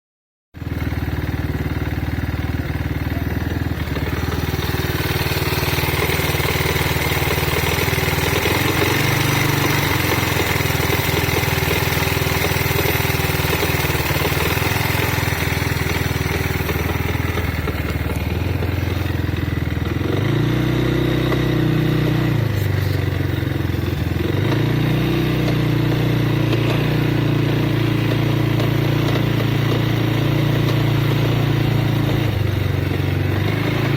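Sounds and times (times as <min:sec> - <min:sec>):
motorcycle engine revving: 0:00.6 - 0:33.9
metallic engine rattling: 0:02.8 - 0:20.0.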